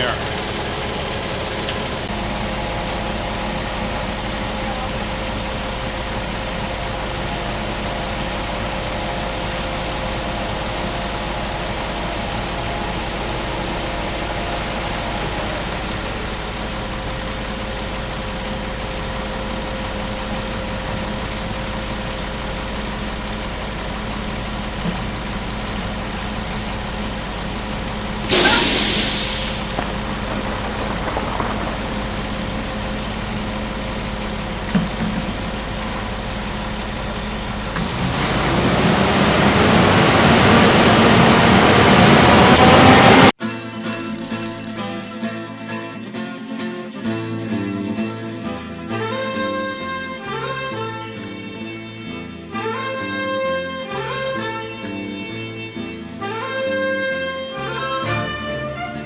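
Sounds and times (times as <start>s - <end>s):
truck engine idling: 0.0s - 43.4s
loud hiss: 4.4s - 43.3s.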